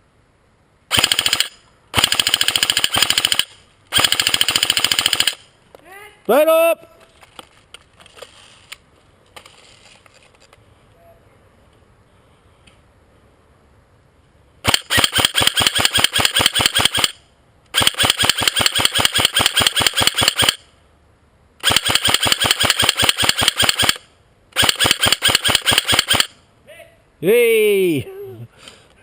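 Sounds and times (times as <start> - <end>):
airsoft gun full-auto clacking: 0.9 - 5.5, 14.6 - 20.6, 21.6 - 26.4.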